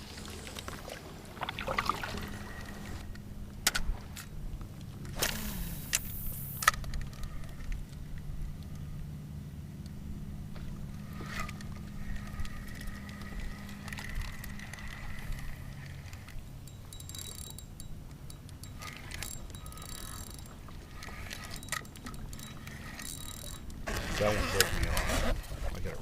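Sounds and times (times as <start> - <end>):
fishing reel whirring: 5.1 - 7.7, 10.8 - 25.5.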